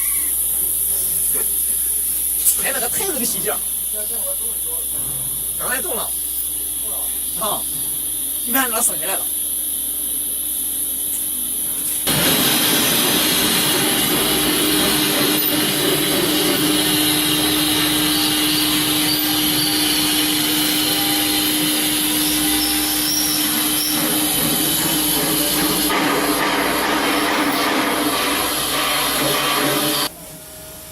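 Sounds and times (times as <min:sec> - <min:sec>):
woodworking router running: 0:12.1 - 0:25.9.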